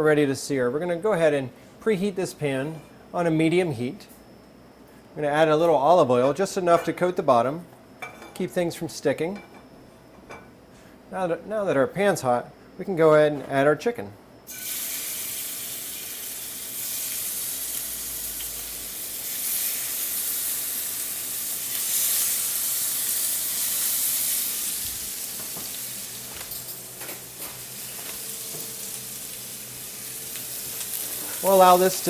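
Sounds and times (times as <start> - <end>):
chicken sizzling in oil: 14.5 - 32.0.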